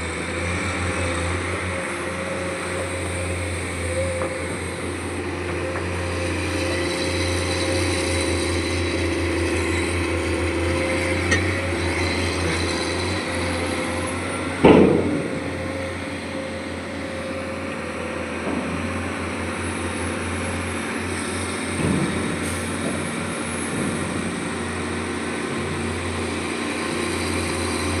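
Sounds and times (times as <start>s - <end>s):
excavator diesel engine running: 0.0s - 28.0s
loud metallic clank: 14.6s - 15.9s.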